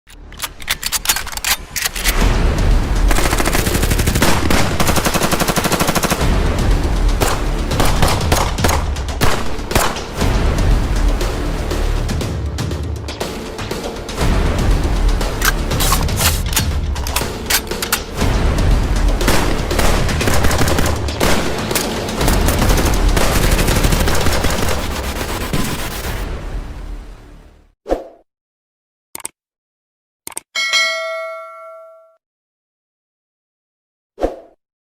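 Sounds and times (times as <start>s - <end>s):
rapid gunfire: 3.0s - 6.4s, 7.2s - 10.2s, 19.2s - 26.2s
automatic gunfire: 3.1s - 6.2s, 19.3s - 21.8s.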